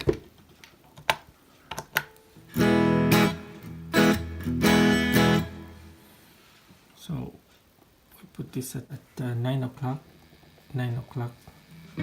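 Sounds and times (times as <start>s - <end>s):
electric guitar strummed chords: 2.4s - 6.0s
electric guitar picked notes: 2.5s - 6.0s.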